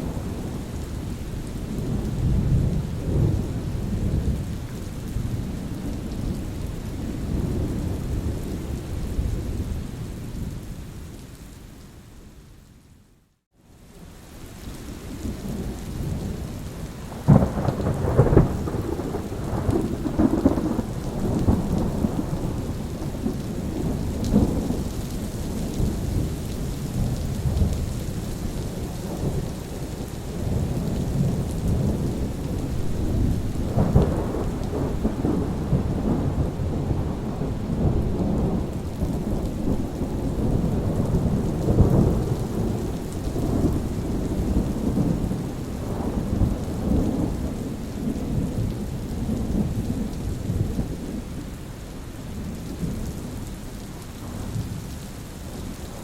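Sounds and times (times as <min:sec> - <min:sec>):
steady rain: 0:00.0 - 0:56.0
rolling thunder: 0:15.6 - 0:51.5
sharp thunderclap: 0:30.4 - 0:47.3.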